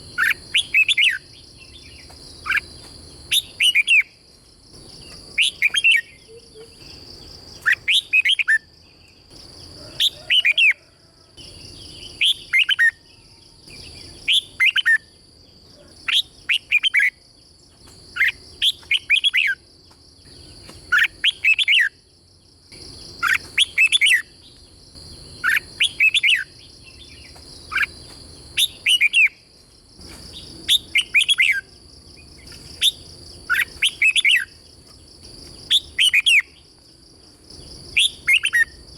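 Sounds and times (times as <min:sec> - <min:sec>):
steady high-pitched whine: 0:00.0 - 0:38.9
bird singing whistled notes: 0:00.1 - 0:02.7, 0:03.3 - 0:04.2, 0:05.0 - 0:09.2, 0:11.8 - 0:15.1, 0:18.2 - 0:19.6, 0:20.3 - 0:22.0, 0:23.2 - 0:24.5, 0:25.4 - 0:28.0, 0:28.6 - 0:29.4, 0:30.7 - 0:31.7, 0:32.4 - 0:34.6, 0:35.7 - 0:36.6, 0:37.9 - 0:38.8.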